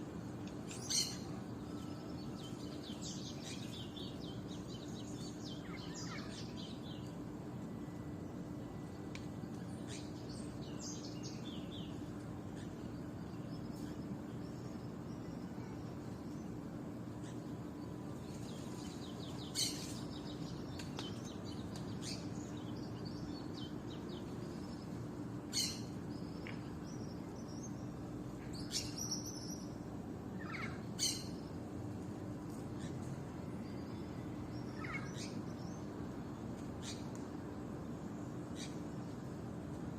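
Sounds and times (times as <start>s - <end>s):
small birds chirping: 0.0s - 39.9s
sharp bird calls: 34.8s - 35.4s.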